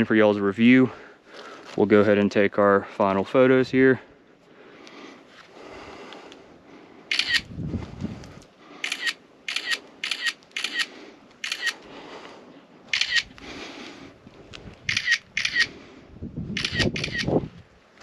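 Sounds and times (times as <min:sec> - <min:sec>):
camera shutter clicking: 0:07.1 - 0:07.5, 0:08.8 - 0:11.8, 0:12.9 - 0:13.4, 0:14.8 - 0:15.7, 0:16.6 - 0:17.4.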